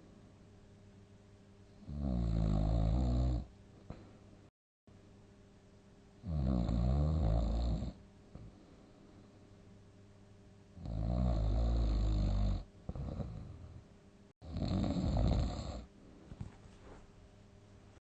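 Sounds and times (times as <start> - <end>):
heavy snoring: 1.8 - 3.5, 6.2 - 8.0, 10.8 - 13.8, 14.4 - 15.9.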